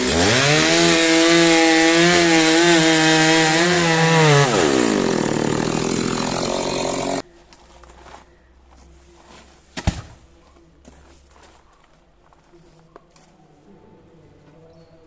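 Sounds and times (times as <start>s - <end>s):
chainsaw revving: 0.0s - 7.2s.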